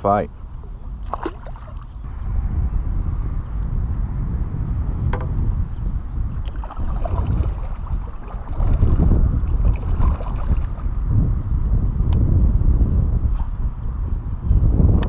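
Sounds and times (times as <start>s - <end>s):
wind buffeting microphone: 0.0s - 15.0s
water sloshing against kayak: 1.0s - 2.0s, 6.4s - 11.0s.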